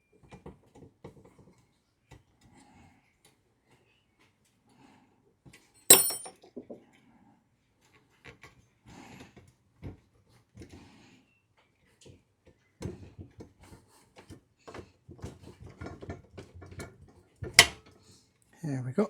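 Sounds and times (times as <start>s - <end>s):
sharp metallic clink: 5.9s - 6.3s.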